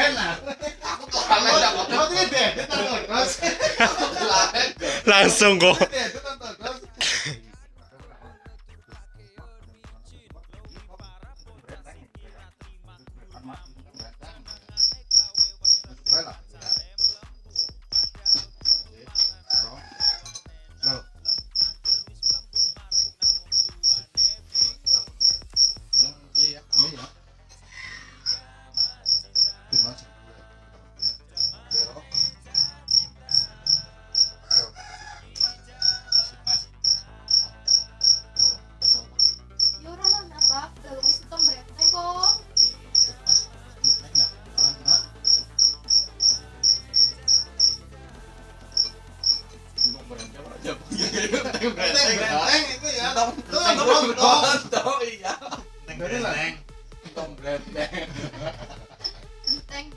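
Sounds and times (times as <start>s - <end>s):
cricket chirping: 14.0s - 26.9s, 28.2s - 29.5s, 31.0s - 34.6s, 35.4s - 47.8s, 48.6s - 50.0s, 59.0s - 59.6s.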